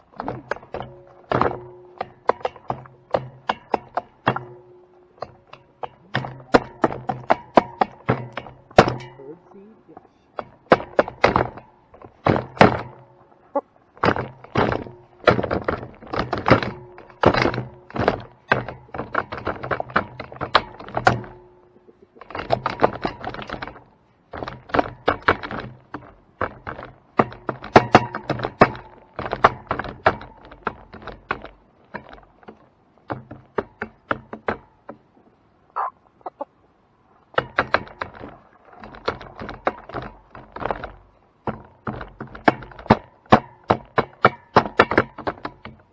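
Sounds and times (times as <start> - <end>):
chickens pecking seed on hard surface: 0.0 - 45.9
chickens clucking softly: 35.7 - 37.3.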